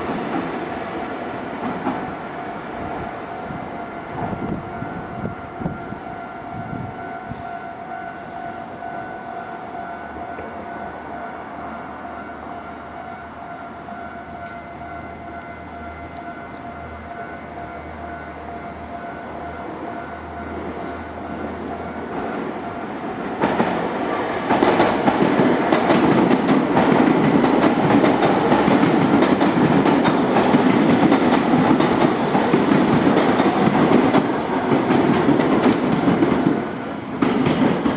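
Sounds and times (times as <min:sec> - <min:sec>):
train wheels rumbling on rail: 0:00.0 - 0:07.6, 0:19.2 - 0:37.9.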